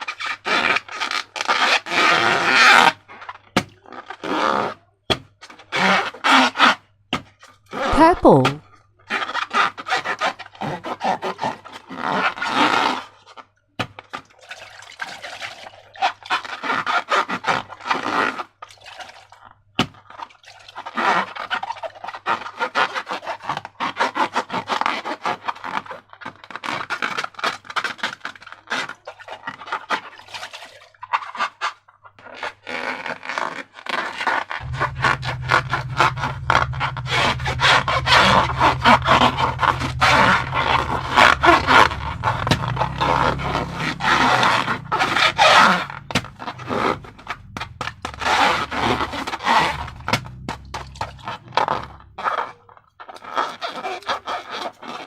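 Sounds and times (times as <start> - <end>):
steady low hum: 34.6 - 52.2.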